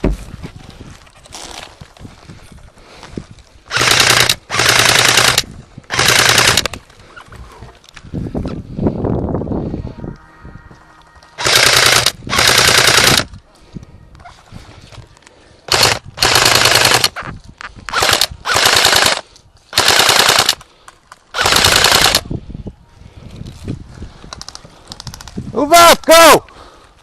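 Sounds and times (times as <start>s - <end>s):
airsoft rifle bursts: 3.7s - 6.8s, 11.4s - 13.3s, 15.7s - 17.2s, 17.9s - 20.7s, 21.3s - 22.2s.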